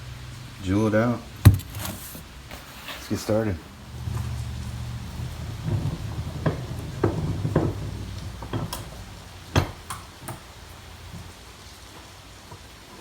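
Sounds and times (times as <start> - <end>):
knocks on sledgehammer head: 1.5 - 1.8.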